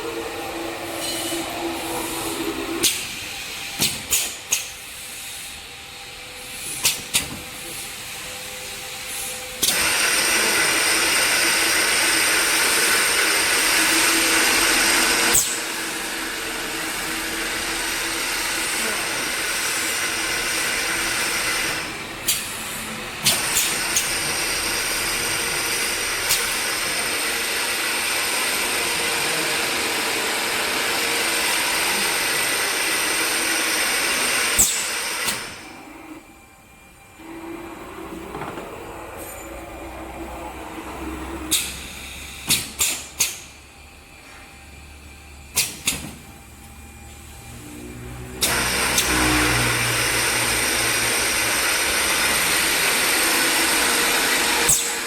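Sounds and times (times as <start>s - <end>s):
machine humming: 0.0s - 3.8s
drilling machine hissing: 0.0s - 36.2s, 48.4s - 55.0s.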